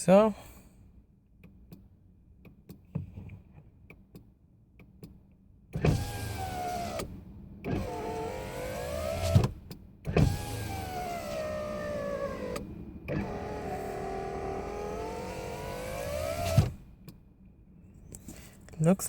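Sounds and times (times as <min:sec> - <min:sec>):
power window motor whine: 0:05.8 - 0:16.9.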